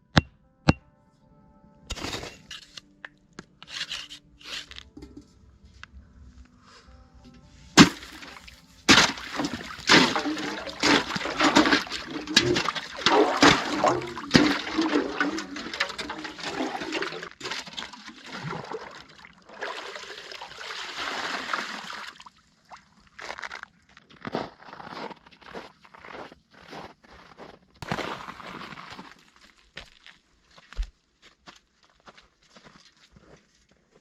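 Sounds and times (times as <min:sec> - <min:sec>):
water splashing and gurgling: 0:07.8 - 0:22.9.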